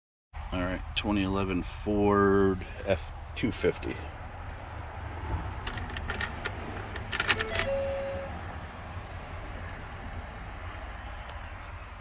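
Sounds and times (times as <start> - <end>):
keys and door latch clicking: 5.7 - 8.2
short beep: 7.4 - 8.4.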